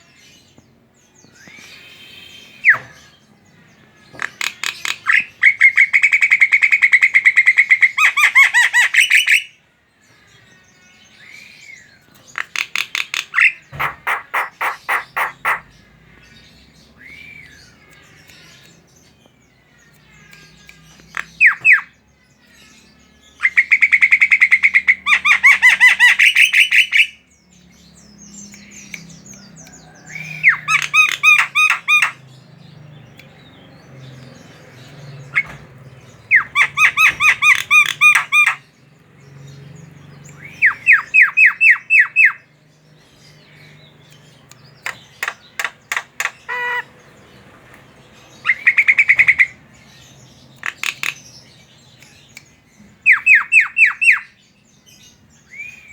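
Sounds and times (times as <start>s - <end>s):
bird chattering harsh notes: 12.4s - 15.7s.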